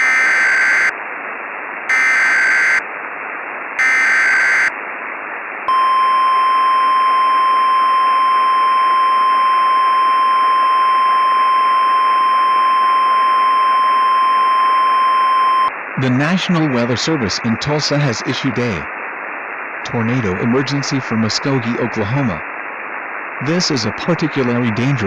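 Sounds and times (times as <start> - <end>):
screeching digital data bursts: 0.0 - 0.9, 1.9 - 2.8, 3.8 - 4.7
radio hiss: 1.9 - 2.8, 3.8 - 4.7, 19.8 - 22.4, 23.4 - 25.0.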